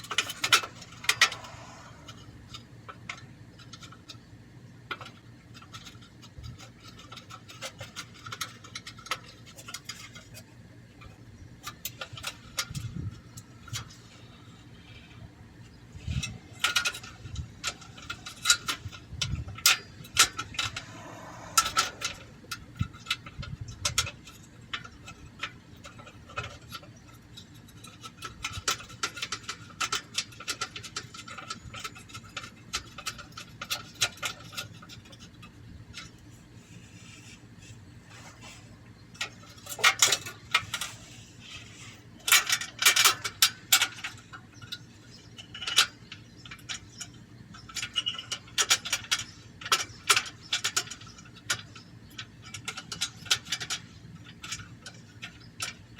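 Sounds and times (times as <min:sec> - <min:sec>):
metallic clicks and clinks: 0:16.0 - 0:36.3, 0:42.2 - 0:55.9.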